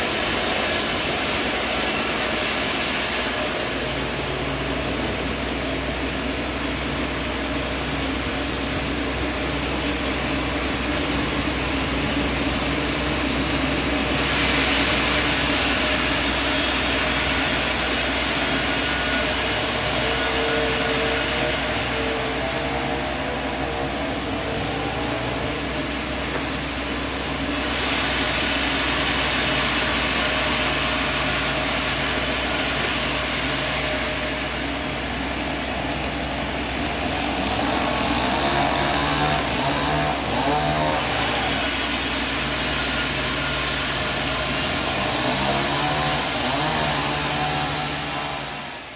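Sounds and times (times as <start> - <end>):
saw blade cutting timber: 0.0 - 3.5, 14.0 - 26.5, 27.5 - 34.8, 37.0 - 48.9
band saw running: 0.0 - 48.9.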